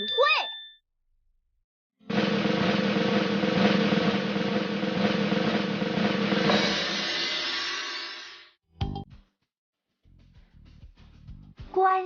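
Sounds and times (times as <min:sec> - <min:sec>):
ringing hit: 0:02.1 - 0:08.3
drum roll: 0:02.1 - 0:08.5.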